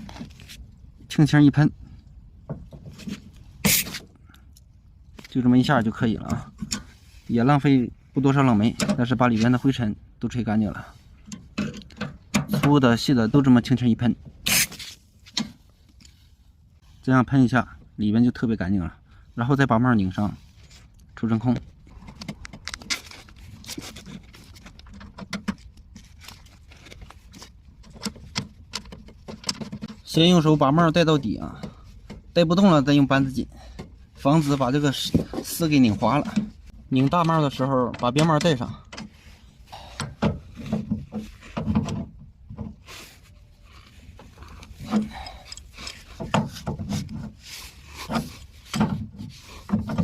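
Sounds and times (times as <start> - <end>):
metal nuts clicking and scraping: 21.7 - 30.5, 43.7 - 50.0.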